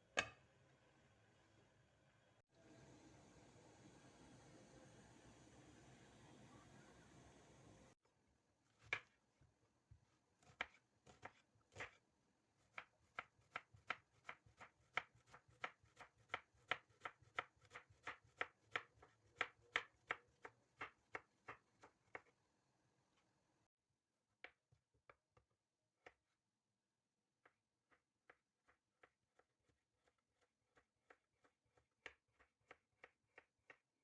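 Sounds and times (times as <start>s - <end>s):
knife chopping on cutting board: 10.4s - 12.0s, 12.7s - 22.3s.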